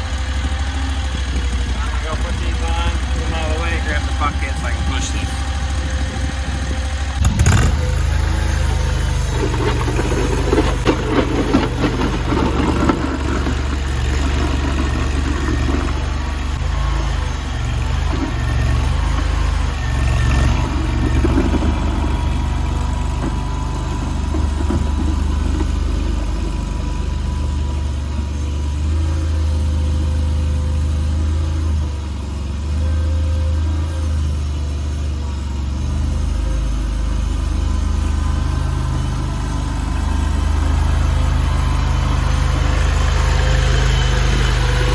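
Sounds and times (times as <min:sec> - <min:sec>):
clanks and rattles: 0:00.0 - 0:29.3
small engine running: 0:00.0 - 0:44.9.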